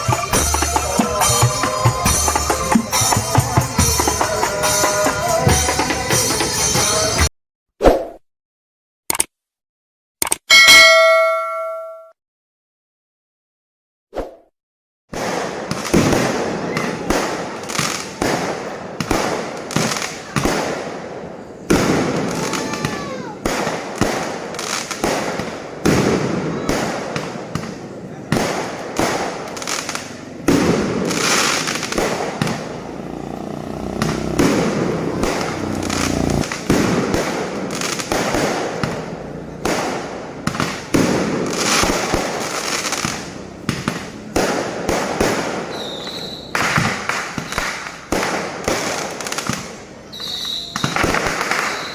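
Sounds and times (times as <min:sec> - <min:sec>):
fireworks bangs with crackle: 0:15.1 - 0:51.9
firework whistling tone: 0:45.2 - 0:48.0, 0:50.0 - 0:51.9.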